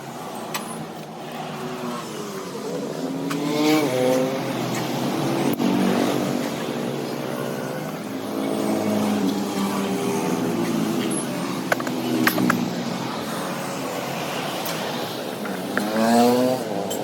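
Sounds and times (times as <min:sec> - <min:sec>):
motorcycle engine revving: 0:01.4 - 0:17.0
sharp clicks: 0:11.7 - 0:12.7.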